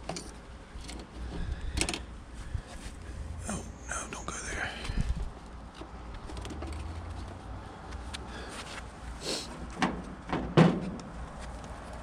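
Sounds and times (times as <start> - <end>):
low steady rumble: 1.4 - 8.0.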